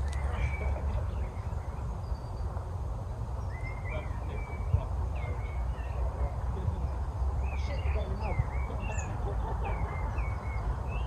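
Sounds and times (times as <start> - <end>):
woodland birds calling: 0.0 - 2.5, 3.4 - 11.0
steady low rumble: 0.0 - 11.0.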